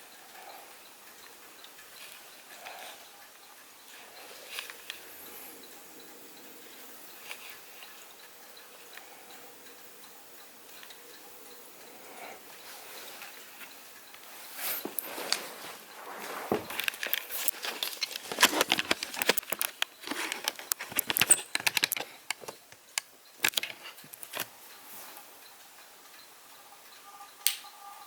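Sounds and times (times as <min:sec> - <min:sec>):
irregular clicks and crackles: 0:00.0 - 0:28.0.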